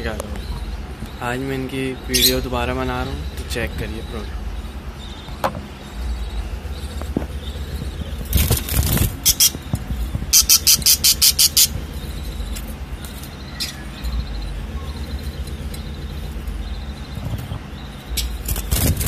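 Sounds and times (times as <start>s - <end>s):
low rumble: 0.0s - 19.0s
parrots squawking: 2.0s - 19.0s.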